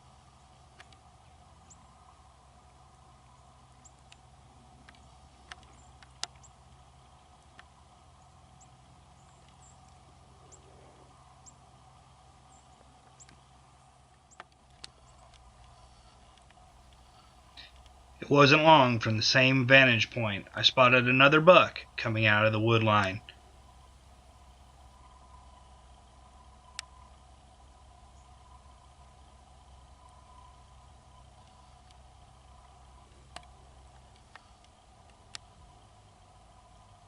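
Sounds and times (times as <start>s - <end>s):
low steady hum: 0.0s - 37.0s
soft clicks: 0.7s - 1.0s, 3.8s - 6.8s, 13.1s - 13.4s, 14.1s - 18.0s, 32.6s - 35.6s.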